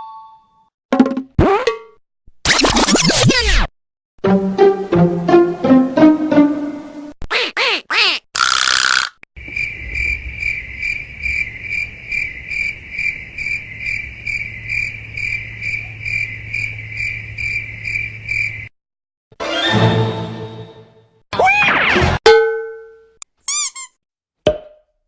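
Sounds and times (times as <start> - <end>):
sliding cartoon tones: 2.4 - 3.7, 7.2 - 9.2, 23.4 - 24.0
cricket chirping: 9.4 - 18.7.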